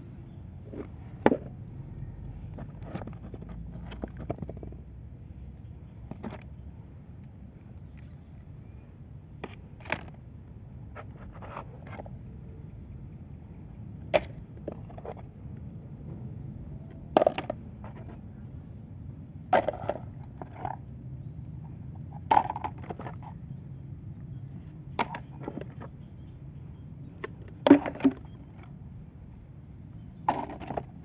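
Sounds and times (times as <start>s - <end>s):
low steady hum: 0.0s - 31.0s
plastic toys clattering: 22.3s - 23.4s, 30.3s - 31.0s.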